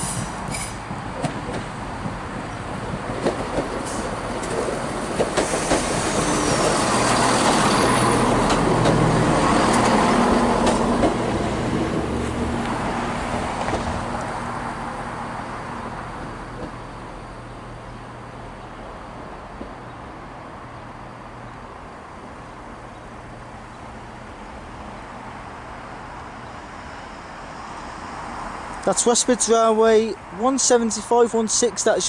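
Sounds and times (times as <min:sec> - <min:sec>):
diesel train engines droning: 0:00.0 - 0:32.0
wheels clicking over rail joints: 0:00.5 - 0:12.8.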